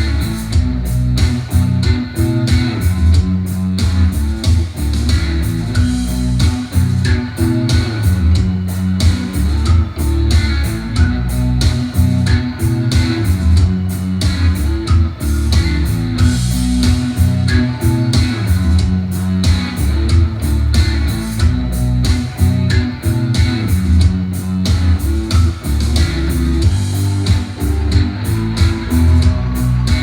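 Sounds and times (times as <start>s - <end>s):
rock music through speakers: 0.0s - 30.0s.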